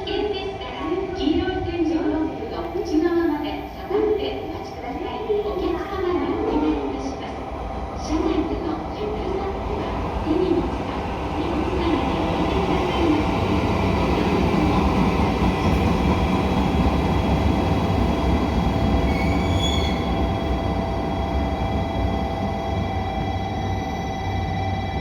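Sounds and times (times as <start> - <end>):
train rumble: 0.0 - 25.0
wheel squeals: 19.1 - 20.2.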